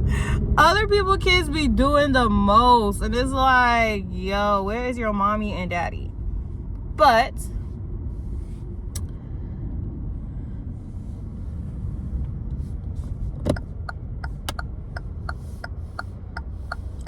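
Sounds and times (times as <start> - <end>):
car road rumble: 0.0 - 17.0
turn signal clicking: 12.2 - 17.0.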